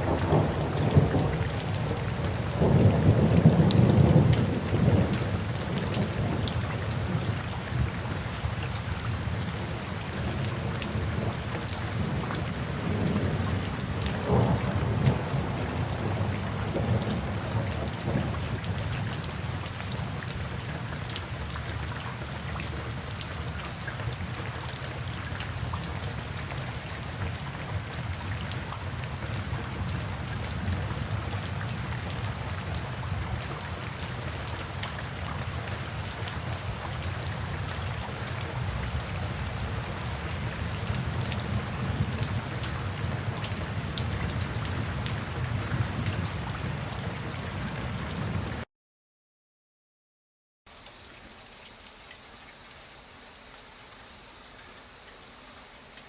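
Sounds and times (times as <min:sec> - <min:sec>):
thunder rumbling: 0:00.0 - 0:06.4, 0:14.2 - 0:18.6
steady rain: 0:00.0 - 0:48.7, 0:50.7 - 0:56.0.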